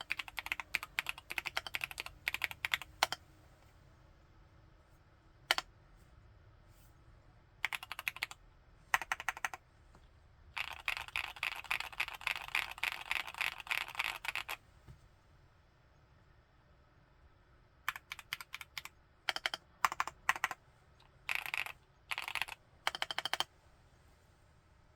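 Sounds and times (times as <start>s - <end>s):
typing on mechanical keyboard: 0.0s - 3.2s, 7.6s - 9.6s, 10.6s - 14.6s, 17.9s - 23.5s.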